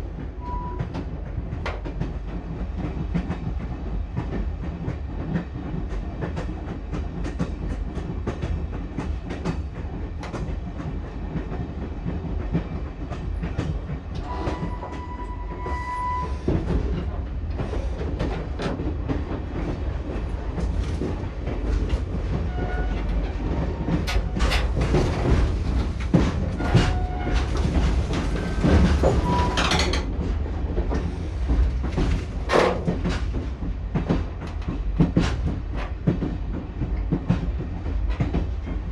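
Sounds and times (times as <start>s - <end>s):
train low rumble: 0.0s - 38.9s
wheels clicking over rail joints: 16.4s - 30.3s.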